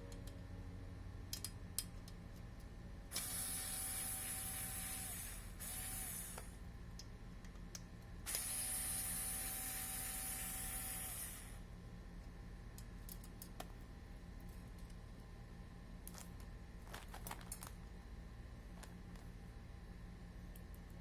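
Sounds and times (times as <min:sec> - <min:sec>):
cordless screwdriver motor whining: 0:03.2 - 0:06.5, 0:08.3 - 0:11.6.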